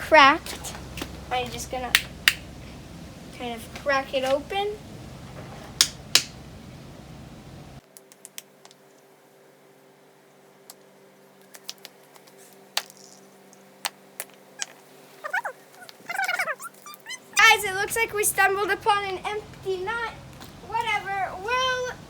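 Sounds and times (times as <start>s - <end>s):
steady rushing noise: 0.0s - 7.8s.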